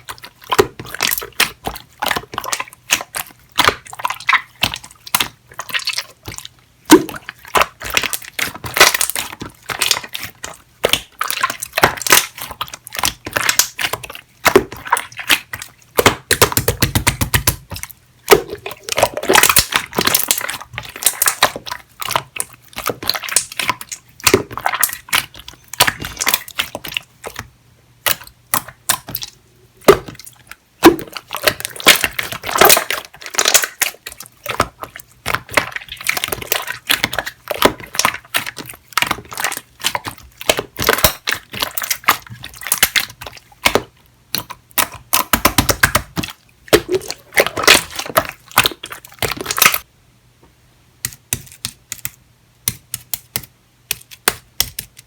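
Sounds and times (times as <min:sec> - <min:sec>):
slime squishing by hand: 0:00.0 - 0:49.9, 0:51.0 - 0:55.0
sticky clicks and bubble pops: 0:10.8 - 0:27.4, 0:28.1 - 0:49.8, 0:51.0 - 0:55.0.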